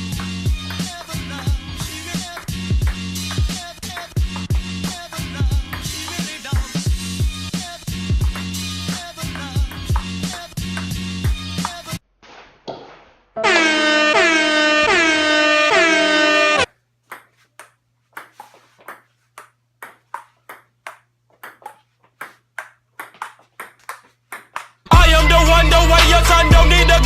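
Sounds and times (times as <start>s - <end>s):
loud music: 0.0s - 12.0s, 24.9s - 27.0s
horn-like blasts: 13.4s - 16.7s
table tennis ball clicking: 17.1s - 24.9s.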